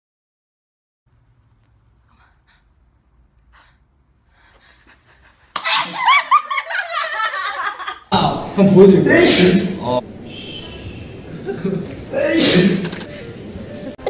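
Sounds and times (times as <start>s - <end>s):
person sneezing: 12.2s - 13.0s.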